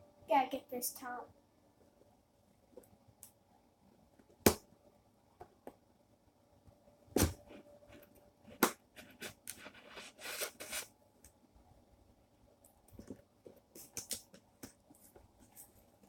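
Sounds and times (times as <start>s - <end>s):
packaging scraping and rustling: 8.9s - 10.9s.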